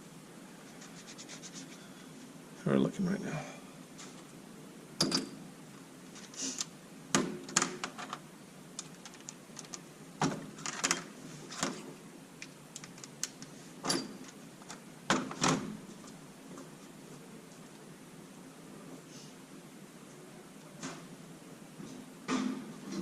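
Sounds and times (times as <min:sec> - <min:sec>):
tools and parts clicking and knocking: 0:05.0 - 0:05.4, 0:08.8 - 0:11.8.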